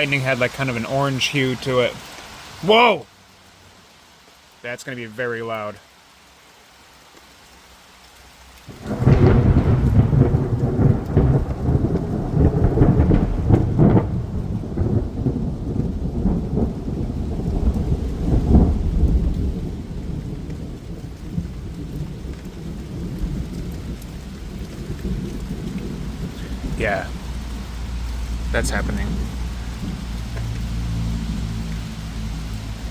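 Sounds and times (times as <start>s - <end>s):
thunder crash and rumble: 8.7s - 27.2s.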